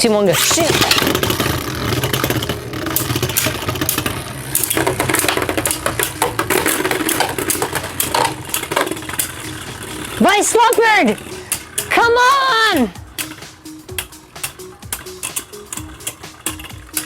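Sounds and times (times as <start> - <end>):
spinning tops whirring: 0.0 - 17.0
spinning tops clacking together: 0.3 - 17.0.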